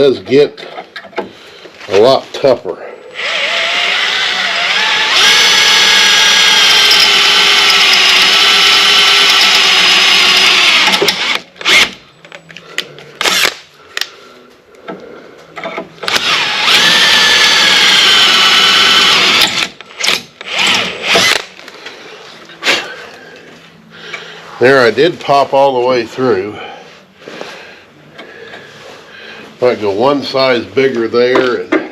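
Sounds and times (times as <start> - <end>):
power drill whining: 3.2 - 12.0, 16.0 - 21.5.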